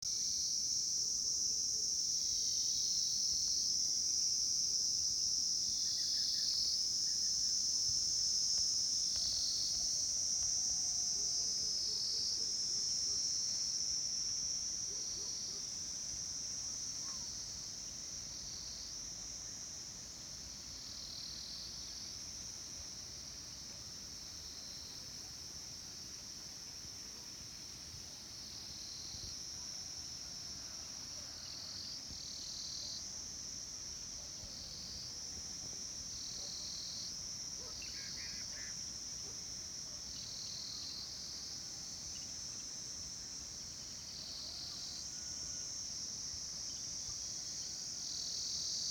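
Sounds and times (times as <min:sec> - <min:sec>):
lower pulsing insect call: 0:00.1 - 0:48.9.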